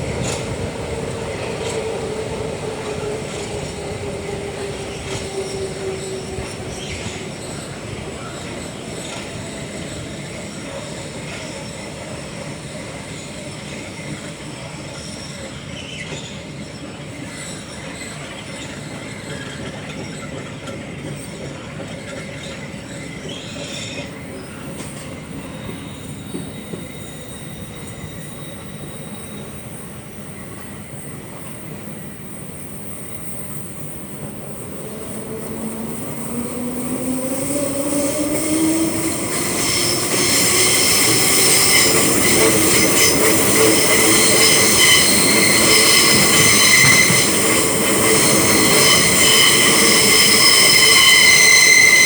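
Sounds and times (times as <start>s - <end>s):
train rolling rumble: 0.0s - 52.0s
high-pitched wheel squeals: 25.4s - 29.8s, 33.8s - 52.0s.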